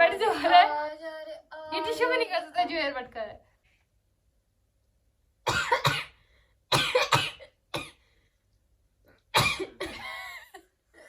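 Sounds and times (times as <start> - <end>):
woman coughing and spluttering: 5.5 - 8.0, 9.4 - 10.5.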